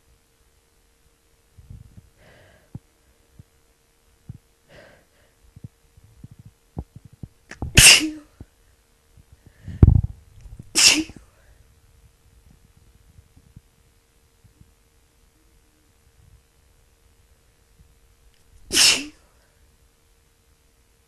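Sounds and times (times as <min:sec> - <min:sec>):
woman sneezing: 0:07.8 - 0:08.3, 0:10.8 - 0:11.2, 0:18.7 - 0:19.2.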